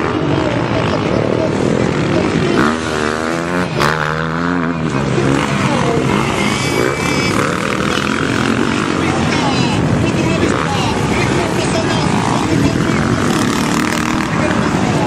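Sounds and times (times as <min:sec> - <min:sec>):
motocross bike engines revving: 0:00.0 - 0:15.0.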